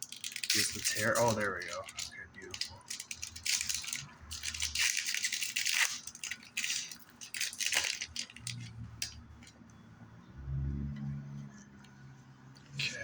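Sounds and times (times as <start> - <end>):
foil wrapper crinkling: 0.0 - 9.5.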